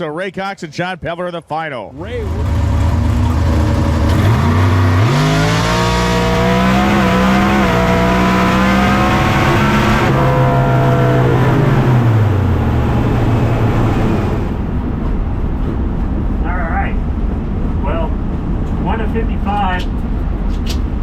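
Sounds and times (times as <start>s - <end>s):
drag car engine at full throttle: 1.9s - 15.6s.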